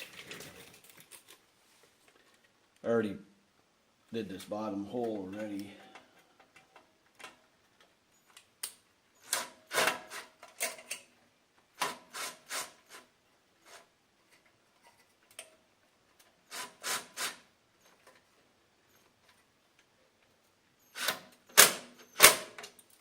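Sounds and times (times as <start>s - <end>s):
screw rasping into sheet metal: 11.9s - 13.9s, 16.5s - 17.4s.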